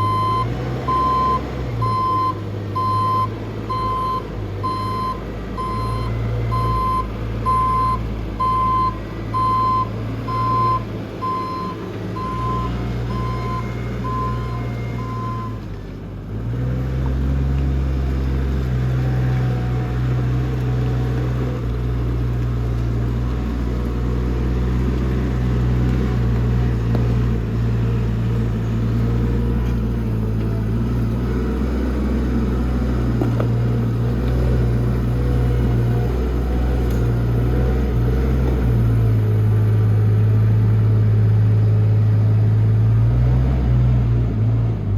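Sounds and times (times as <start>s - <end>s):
reversing alarm beeping: 0.0s - 15.6s
forklift engine running: 0.0s - 44.9s.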